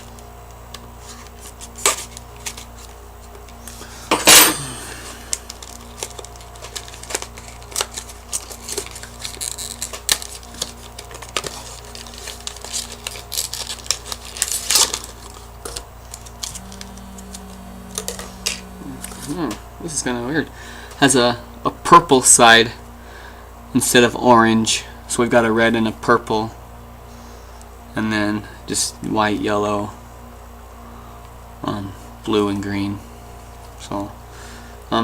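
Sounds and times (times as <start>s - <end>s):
packaging rustling and clicking: 5.3s - 16.6s.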